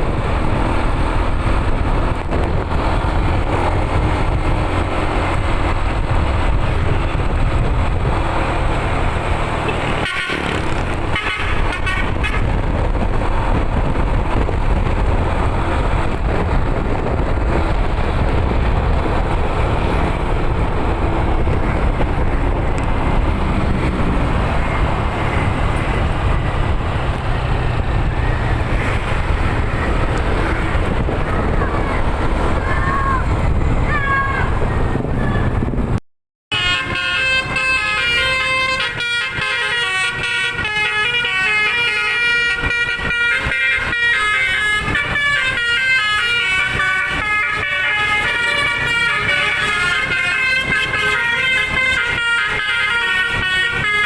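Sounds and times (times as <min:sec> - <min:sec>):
bus engine and road rumble: 0:00.0 - 0:54.0
musical bus horn: 0:09.6 - 0:13.2, 0:36.5 - 0:54.0.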